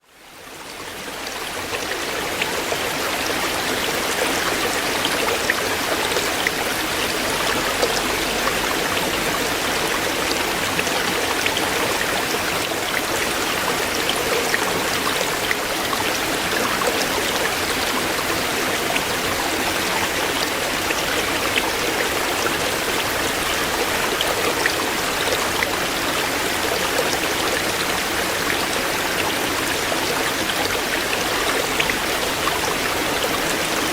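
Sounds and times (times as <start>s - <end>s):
stream running over stones: 0.0s - 33.9s.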